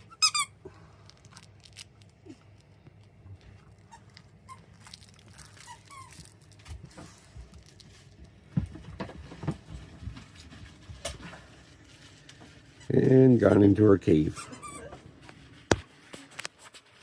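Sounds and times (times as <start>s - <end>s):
faint squeaks: 12.5s - 15.3s.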